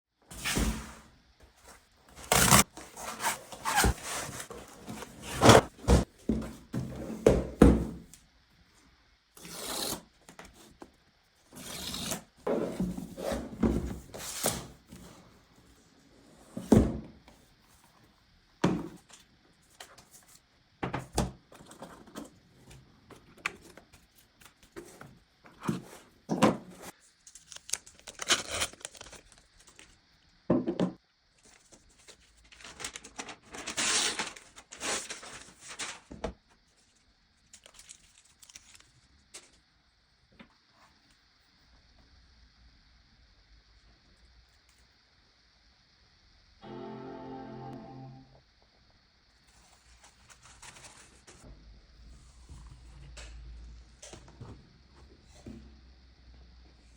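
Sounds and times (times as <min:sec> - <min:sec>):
cardboard packaging tearing and rubbing: 0:02.2 - 0:06.0, 0:32.6 - 0:36.0.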